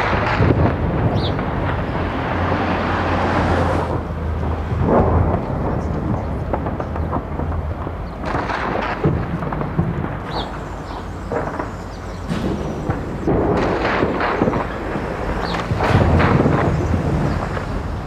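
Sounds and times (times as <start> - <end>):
explosions: 0.0 - 18.0
echoing gunfire: 8.2 - 18.0.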